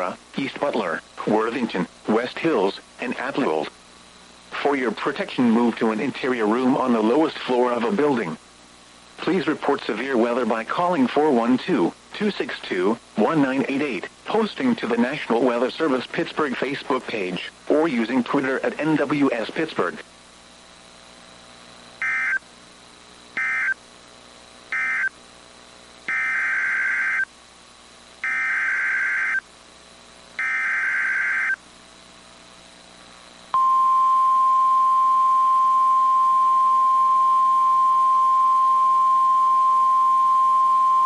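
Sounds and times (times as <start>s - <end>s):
steady warning alarm tone: 22.0s - 22.4s, 23.4s - 23.8s, 24.7s - 25.2s, 26.1s - 27.3s, 28.2s - 29.4s, 30.4s - 31.6s
warbling data bursts: 24.7s - 25.1s, 26.1s - 27.3s, 28.2s - 29.4s, 30.4s - 31.6s.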